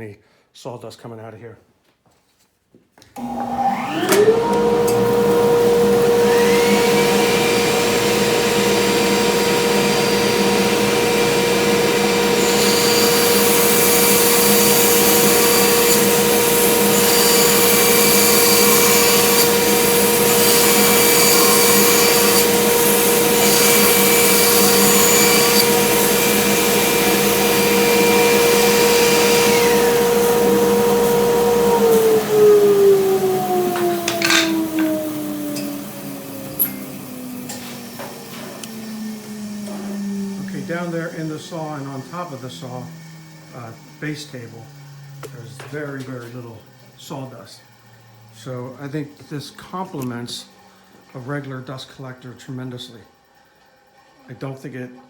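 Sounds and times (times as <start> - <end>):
saw cutting plywood: 3.2 - 46.4
bandsaw whine: 3.2 - 51.5.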